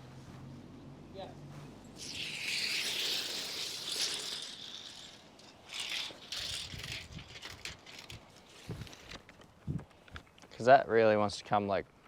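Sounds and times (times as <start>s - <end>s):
chalk line reel ratcheting whirr: 2.0s - 8.6s.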